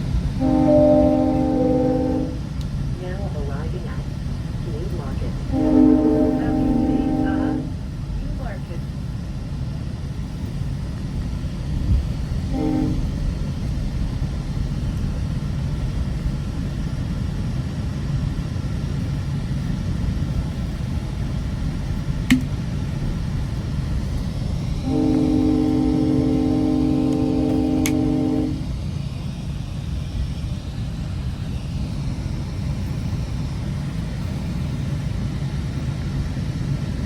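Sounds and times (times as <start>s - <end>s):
train rumbling on rails: 0.0s - 37.0s
train horn: 0.4s - 2.5s, 5.4s - 7.8s, 12.4s - 13.3s, 24.8s - 28.7s.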